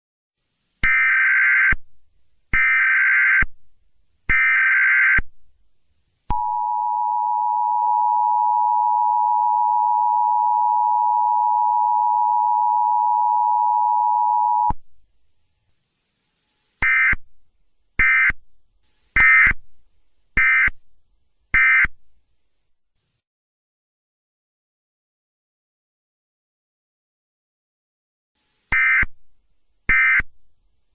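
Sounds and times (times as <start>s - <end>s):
short data bursts: 0.8s - 1.8s, 2.5s - 3.5s, 4.3s - 5.3s, 16.8s - 17.2s, 18.0s - 18.4s, 19.2s - 19.6s, 20.4s - 20.8s, 21.6s - 22.0s, 28.7s - 29.2s, 29.9s - 30.3s
two-tone attention signal: 6.3s - 14.7s
screeching data header bursts: 16.8s - 17.2s, 18.0s - 18.4s, 19.2s - 19.6s, 20.4s - 20.7s, 21.6s - 21.9s.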